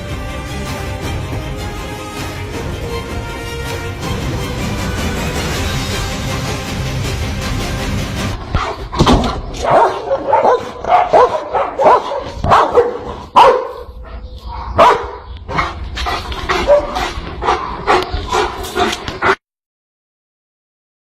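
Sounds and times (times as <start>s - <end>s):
dog barking and yipping: 8.5s - 19.4s.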